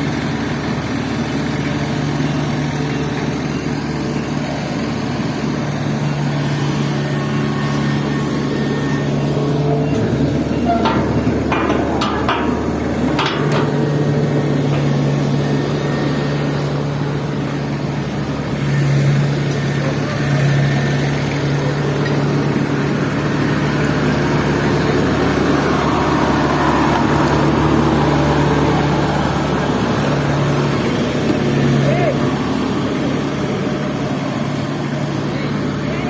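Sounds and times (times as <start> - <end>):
combine harvester diesel engine: 0.0 - 36.0.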